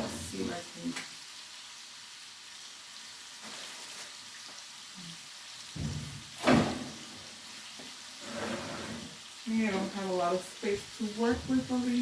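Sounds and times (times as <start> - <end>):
chicken sizzling in oil: 0.0 - 12.0
loud knock: 5.8 - 7.0.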